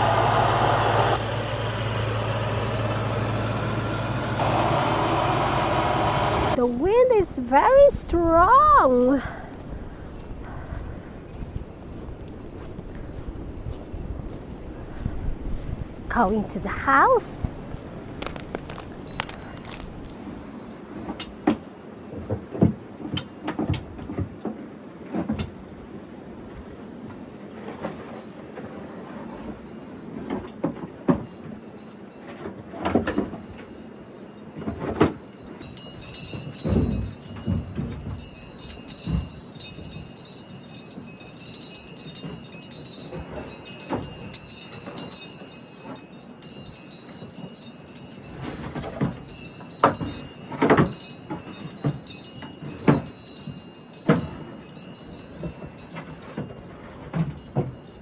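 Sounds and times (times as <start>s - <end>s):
wind chimes ringing: 18.3s - 23.5s, 28.1s - 58.0s.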